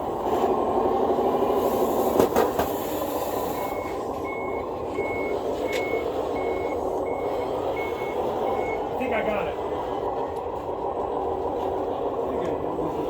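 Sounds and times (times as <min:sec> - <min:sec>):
reversing beeper beeping: 0:03.5 - 0:09.0.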